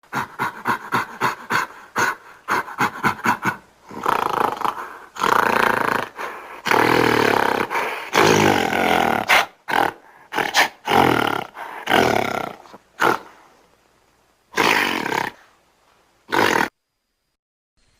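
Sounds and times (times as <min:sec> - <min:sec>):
large animal grunting: 0:00.1 - 0:13.4
large animal rough calls: 0:00.1 - 0:13.5, 0:14.5 - 0:15.5, 0:16.3 - 0:16.7.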